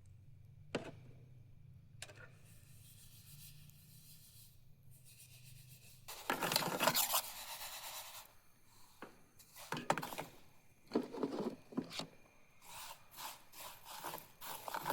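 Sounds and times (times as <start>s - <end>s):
vermicelli scraped in dry pan: 12.6s - 14.9s.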